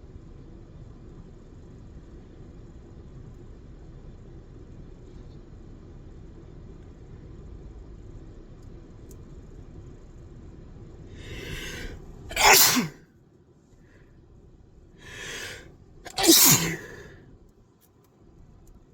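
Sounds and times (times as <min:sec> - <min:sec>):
person sneezing: 0:11.3 - 0:13.0, 0:15.1 - 0:17.1.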